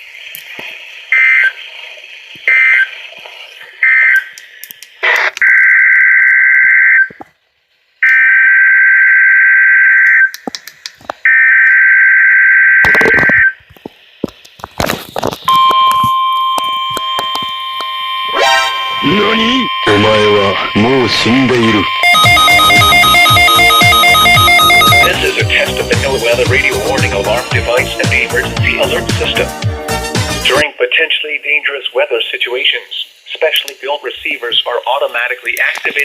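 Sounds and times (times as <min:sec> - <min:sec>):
buzzy warbling data bursts: 0:16.0 - 0:29.6.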